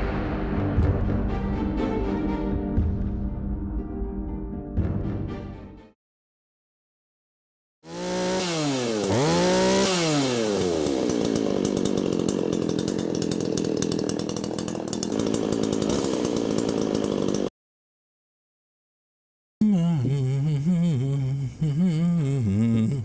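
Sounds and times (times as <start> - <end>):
chainsaw running: 7.8 - 17.5.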